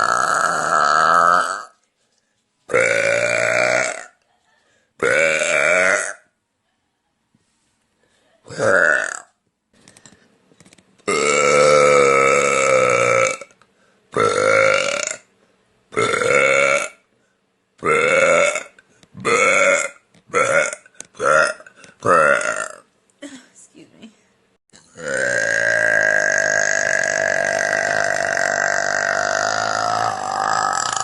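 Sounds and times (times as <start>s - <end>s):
woman burping loudly: 0.0s - 1.8s, 2.7s - 4.2s, 5.0s - 6.4s, 8.4s - 9.4s, 11.0s - 15.3s, 15.9s - 17.1s, 17.8s - 23.4s, 24.7s - 31.0s.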